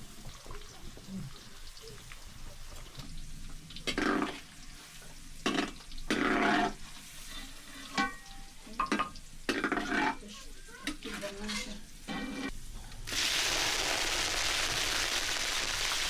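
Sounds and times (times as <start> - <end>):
food sizzling in a pan: 0.0 - 16.0
utensil scraping a pan: 5.5 - 8.3, 9.5 - 12.6.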